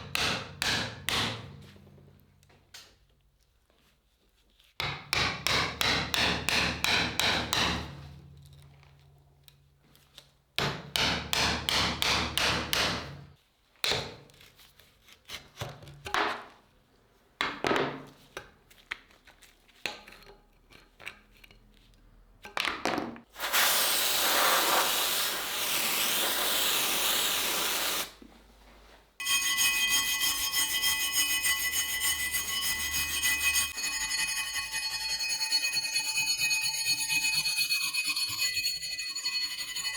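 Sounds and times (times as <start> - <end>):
scraping strokes on metal: 29.2 - 39.9.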